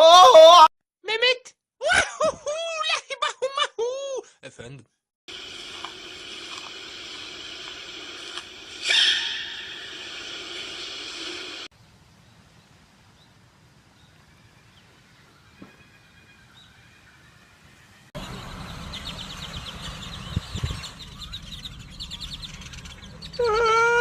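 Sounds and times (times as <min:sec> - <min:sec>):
animal call with sliding pitch: 0:08.8 - 0:10.2, 0:22.6 - 0:24.0
birds chirping: 0:08.8 - 0:24.0.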